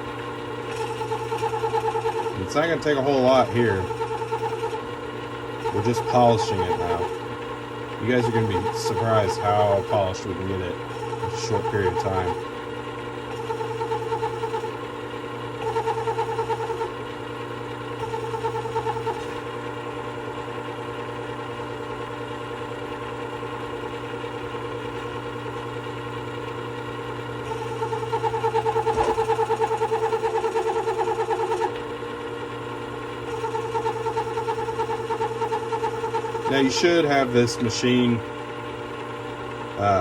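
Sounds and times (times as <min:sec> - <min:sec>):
blade grinding flutter: 0:00.0 - 0:17.0, 0:17.9 - 0:19.6, 0:27.4 - 0:32.0, 0:33.1 - 0:38.2
sharpener motor running: 0:00.0 - 0:40.0.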